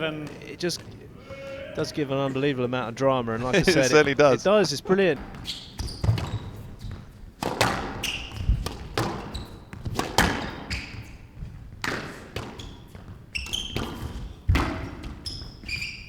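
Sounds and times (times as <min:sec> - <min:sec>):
shoes squeaking on court floor: 0:00.0 - 0:16.0
squash ball smacks: 0:05.3 - 0:15.2.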